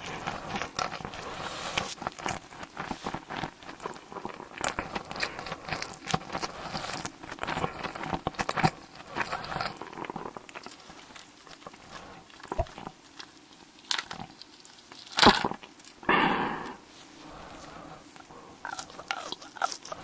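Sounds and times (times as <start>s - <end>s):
chewing and mouth noises: 0.0s - 16.1s, 17.2s - 20.0s.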